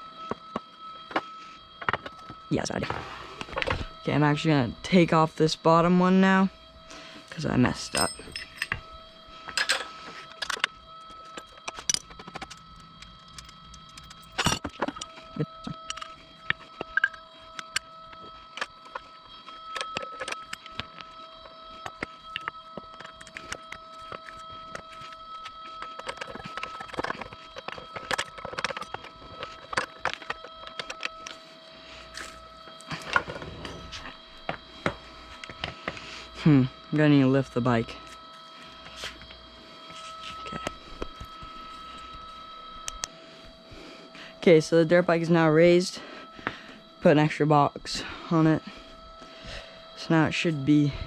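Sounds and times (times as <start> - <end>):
faint high-pitched tone: 0.0 - 51.0
metal tools clinking: 7.3 - 8.8, 9.5 - 16.2
metal tools clicking and knocking: 7.9 - 8.8.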